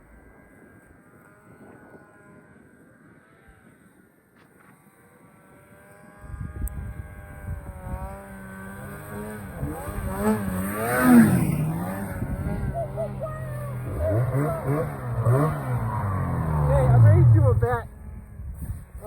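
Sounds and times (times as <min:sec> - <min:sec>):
faint snowmobile engine: 0:00.0 - 0:19.0
snowmobile engine revving: 0:05.0 - 0:19.0.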